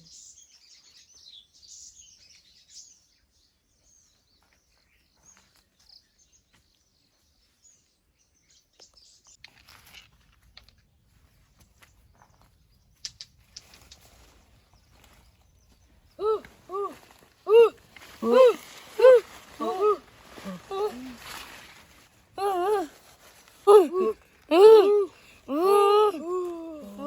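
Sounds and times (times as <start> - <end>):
small birds chirping: 0.0 - 9.5, 11.6 - 22.9.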